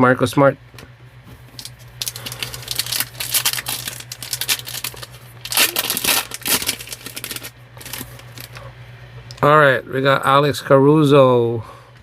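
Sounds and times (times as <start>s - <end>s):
foil wrapper crinkling and tearing: 1.6s - 8.6s.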